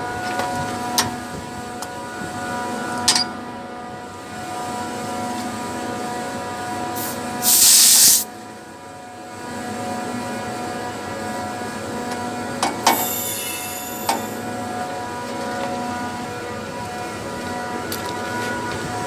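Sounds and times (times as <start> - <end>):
burst of hissing: 7.0 - 8.3, 12.9 - 14.4.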